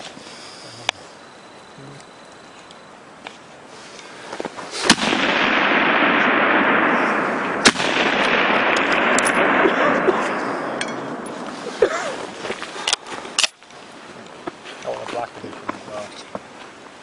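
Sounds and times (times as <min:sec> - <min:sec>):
rifle shots: 0:04.8 - 0:12.6
loud rushing noise: 0:04.8 - 0:12.8.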